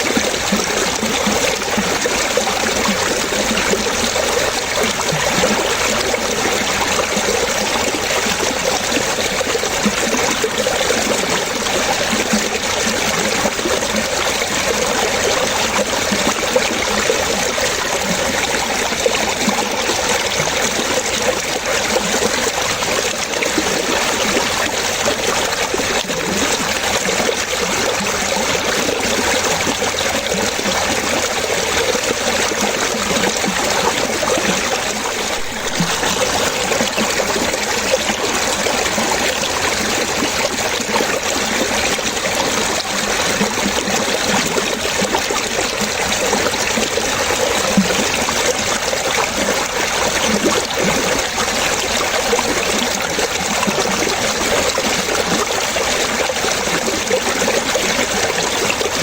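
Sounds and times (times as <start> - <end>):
water trickling and splashing: 0.0 - 59.0
bubbling blips: 32.9 - 46.2.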